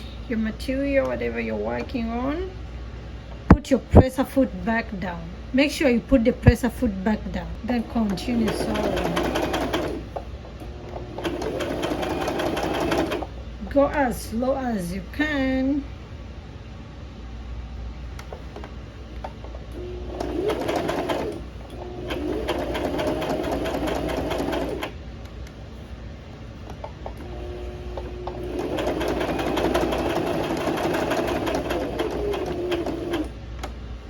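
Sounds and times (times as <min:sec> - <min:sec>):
sewing machine stitching: 0:07.6 - 0:13.3, 0:19.4 - 0:25.0, 0:27.0 - 0:33.4.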